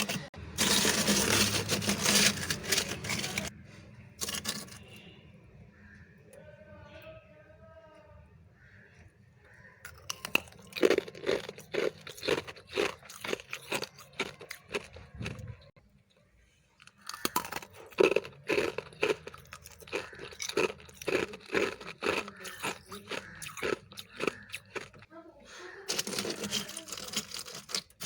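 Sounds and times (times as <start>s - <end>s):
chewing crunchy ice: 0.0s - 3.5s, 4.2s - 4.9s, 9.8s - 15.7s, 16.8s - 25.1s, 25.9s - 28.0s.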